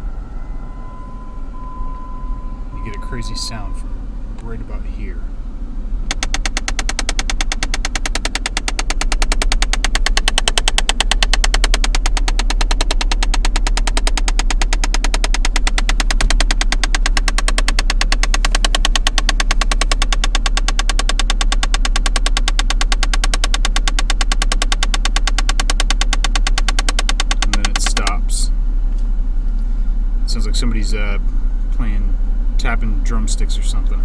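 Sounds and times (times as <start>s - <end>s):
low steady hum: 0.0s - 24.2s
fast tapping from running engine: 0.0s - 34.0s.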